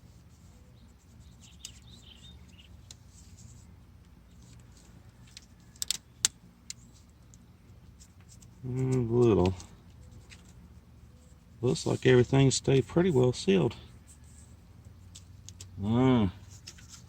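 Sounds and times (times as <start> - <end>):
steady low hum: 0.0 - 17.0
metallic clicks of engine parts: 4.0 - 7.4, 15.0 - 15.8.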